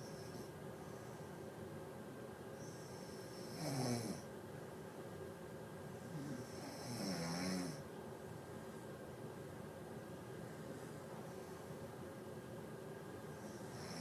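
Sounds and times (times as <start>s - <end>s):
person snoring: 6.1s - 7.8s.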